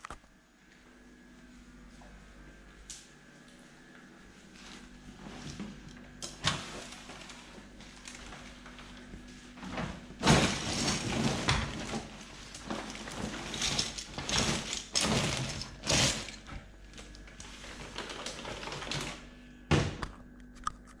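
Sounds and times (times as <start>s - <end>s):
rustling and scraping of objects: 4.0s - 19.2s.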